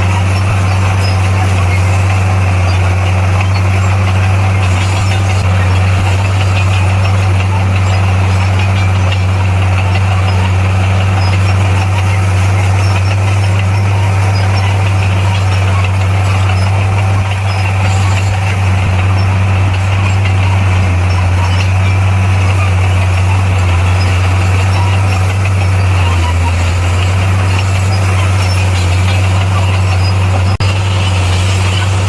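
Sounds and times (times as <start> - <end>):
diesel engine deep drone: 0.0 - 32.0.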